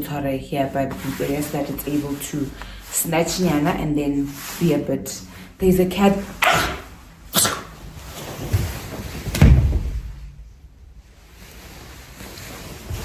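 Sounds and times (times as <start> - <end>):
heavy low thump: 9.3 - 10.6.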